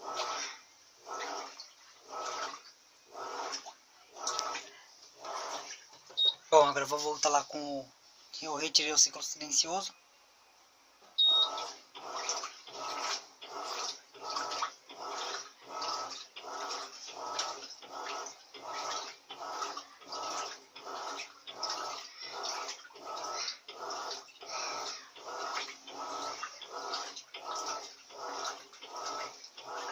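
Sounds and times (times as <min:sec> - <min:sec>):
washing machine swishing water: 0:00.0 - 0:09.9, 0:11.2 - 0:29.9
short high beep: 0:11.2 - 0:11.6.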